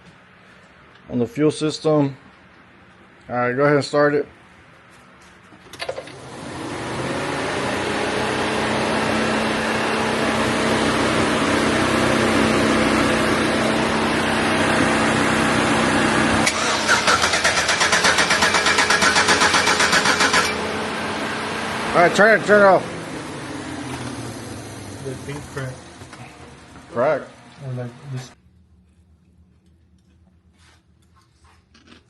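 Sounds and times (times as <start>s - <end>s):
engine running: 5.7s - 28.4s.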